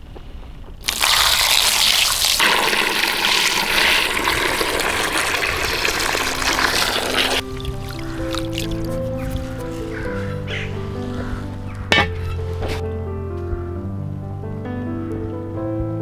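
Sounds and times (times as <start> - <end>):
water pouring and splashing: 0.8 - 12.8.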